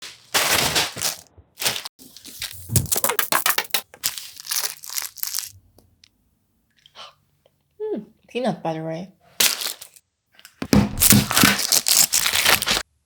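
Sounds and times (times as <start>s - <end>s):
plastic packaging tearing: 0.0s - 5.6s, 9.4s - 10.0s, 11.0s - 12.8s
plastic packaging crinkling: 0.0s - 5.7s, 9.4s - 10.0s, 11.0s - 12.8s.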